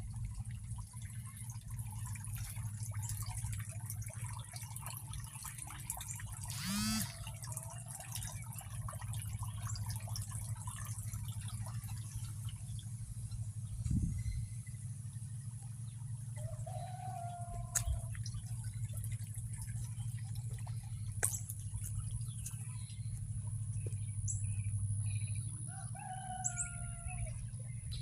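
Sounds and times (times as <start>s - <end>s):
steady low hum: 0.0s - 7.4s, 8.3s - 28.0s
water trickling and dripping: 0.0s - 13.9s, 15.4s - 27.0s.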